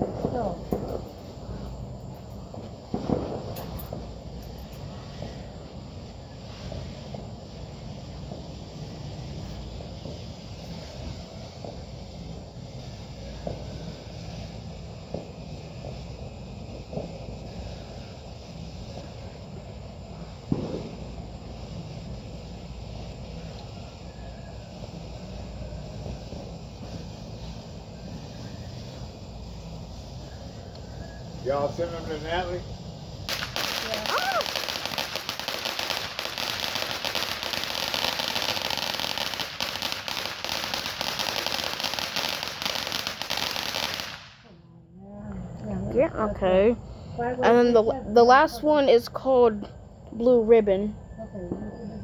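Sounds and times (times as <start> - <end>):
dull firework pops: 0.0 - 5.5, 9.4 - 11.9, 13.2 - 13.9, 15.0 - 17.8, 20.4 - 21.5, 33.2 - 44.6
wind rumble on microphone: 0.0 - 34.6.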